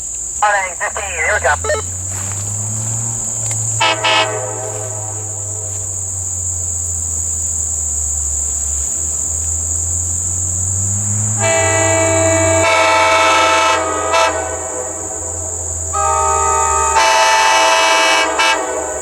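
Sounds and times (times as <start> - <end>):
crickets chirring: 0.0 - 19.0
locomotive air horn: 0.4 - 5.9, 11.2 - 19.0.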